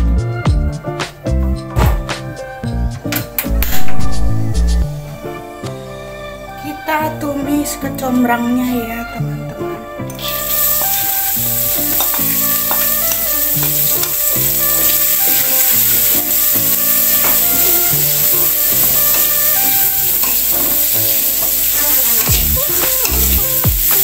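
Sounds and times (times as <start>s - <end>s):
flowers sizzling in hot oil: 10.1s - 24.0s.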